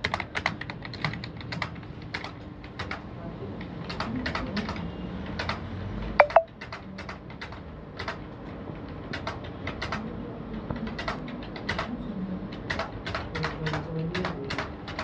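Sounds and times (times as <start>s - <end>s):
fast typing on keyboard: 0.0s - 3.0s, 3.8s - 4.8s, 5.4s - 5.6s, 6.3s - 8.2s, 9.1s - 10.2s, 10.8s - 11.9s, 12.5s - 15.0s.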